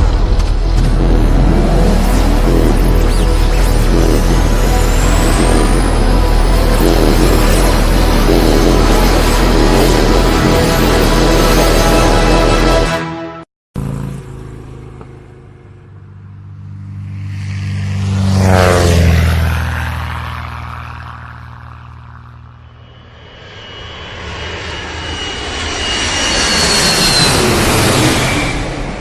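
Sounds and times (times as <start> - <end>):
high engine whine: 0.0 - 29.0
aircraft engine flying past: 13.8 - 29.0.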